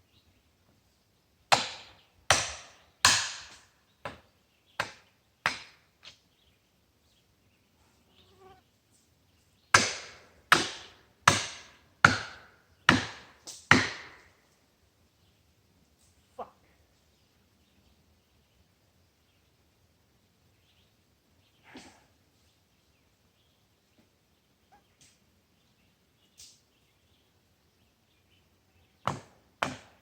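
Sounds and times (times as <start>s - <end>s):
axe chopping wood: 1.5s - 4.2s, 4.8s - 5.8s, 9.7s - 14.3s, 29.0s - 30.0s.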